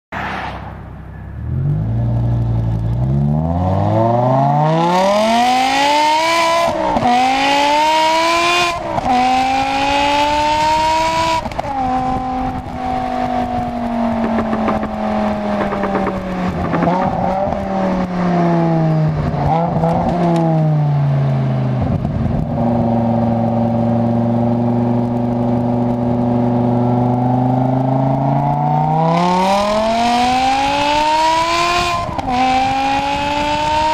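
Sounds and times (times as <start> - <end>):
car exhaust accelerating: 8.9 - 20.6.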